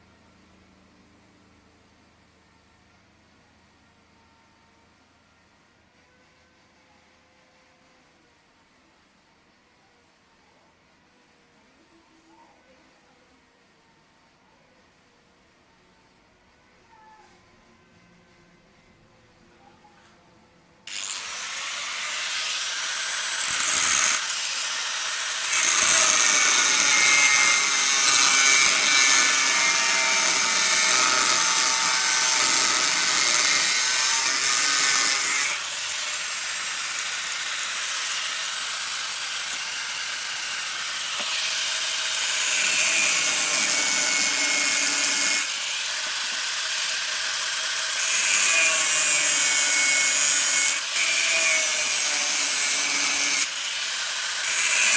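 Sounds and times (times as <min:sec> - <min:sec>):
power tool grinding steel: 0:20.9 - 0:54.9.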